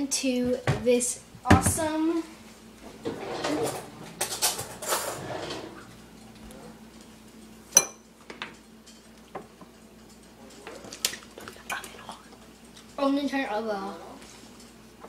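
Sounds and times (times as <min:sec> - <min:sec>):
cutlery scraping plate: 0:03.0 - 0:05.9.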